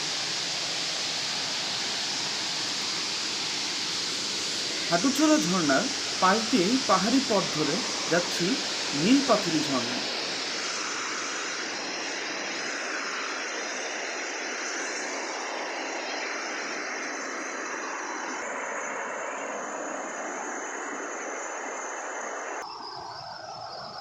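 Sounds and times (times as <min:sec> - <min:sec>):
waterfall rushing: 0:00.0 - 0:11.2.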